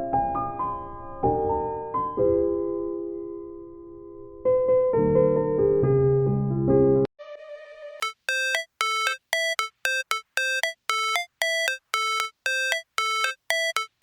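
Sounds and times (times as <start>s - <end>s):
electronic beeping melody: 8.0s - 14.0s.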